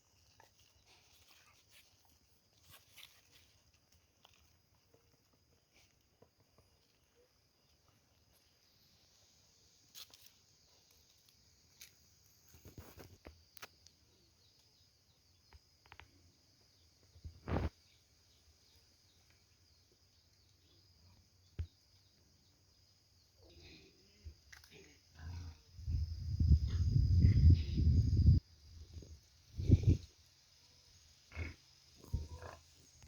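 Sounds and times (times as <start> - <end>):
insects chirring: 0.0 - 33.0.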